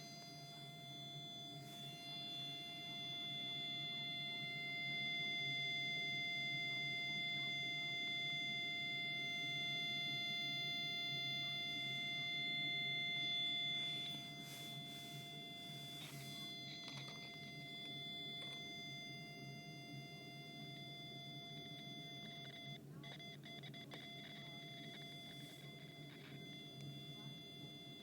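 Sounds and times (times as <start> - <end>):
steady buzzy electronic tone: 0.0 - 5.0.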